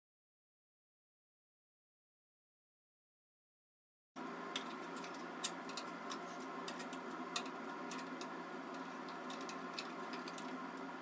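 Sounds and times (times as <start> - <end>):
steady hum: 4.2 - 11.0.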